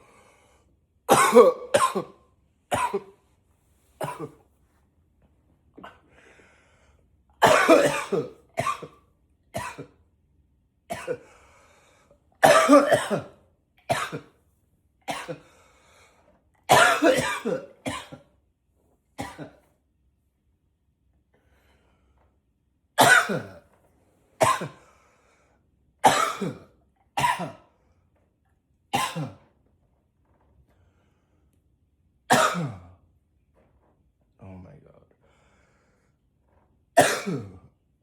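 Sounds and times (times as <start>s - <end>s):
man coughing: 1.1s - 3.2s, 4.0s - 4.4s, 7.4s - 9.0s, 9.6s - 10.0s, 10.9s - 11.3s, 12.4s - 14.3s, 15.1s - 15.5s, 16.7s - 18.3s, 19.2s - 19.6s, 23.0s - 23.6s, 24.4s - 24.9s, 26.0s - 27.7s, 29.0s - 29.5s, 32.3s - 32.9s, 37.0s - 37.7s.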